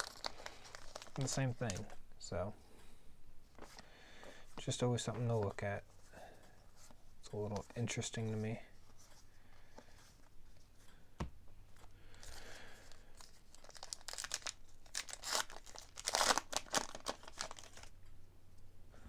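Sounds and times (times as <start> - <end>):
wrapper tearing and crinkling: 0.0 - 1.9, 13.1 - 17.9.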